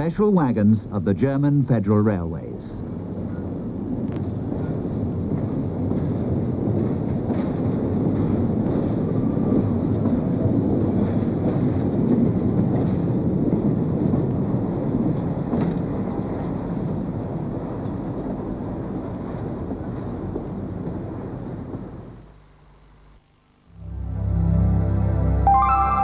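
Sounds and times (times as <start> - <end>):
freight train rumbling past: 0.0 - 22.0, 23.8 - 26.0
train wheel clicks: 5.3 - 21.9.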